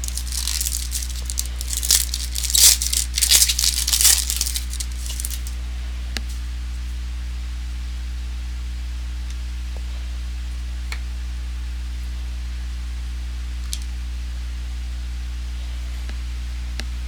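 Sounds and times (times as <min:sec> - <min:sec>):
card pack wrapper tearing: 0:00.0 - 0:05.6.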